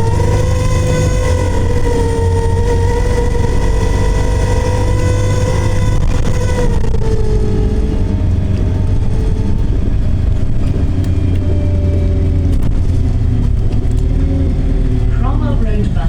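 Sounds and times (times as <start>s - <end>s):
bus drivetrain rumble and whine: 0.0s - 16.0s.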